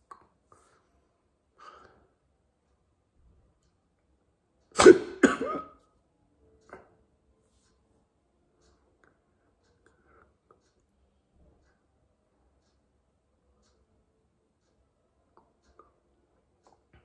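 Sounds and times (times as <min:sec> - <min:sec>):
loud coughs: 0:04.8 - 0:05.8.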